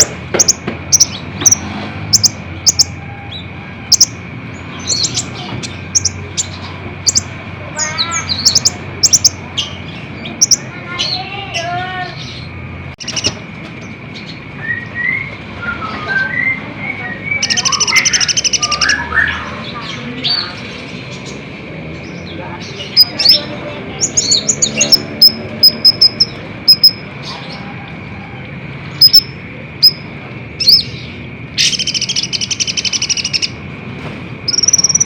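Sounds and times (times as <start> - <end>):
loud fast bird trill: 0.0 - 13.4, 17.2 - 20.6, 22.8 - 27.1, 28.9 - 33.6, 34.5 - 35.0
bird chirping: 0.0 - 27.7, 28.9 - 33.6, 34.4 - 35.0
lower slurred bird notes: 22.2 - 27.4.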